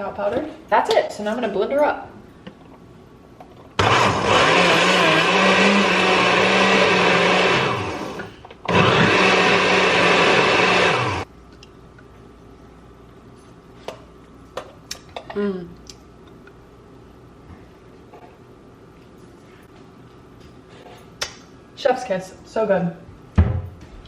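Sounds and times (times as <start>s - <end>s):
blender blending: 3.8s - 11.3s.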